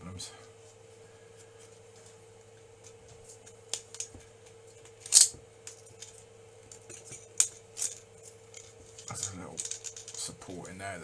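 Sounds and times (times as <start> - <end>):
plastic pieces snapping: 5.0 - 6.2, 7.4 - 10.3.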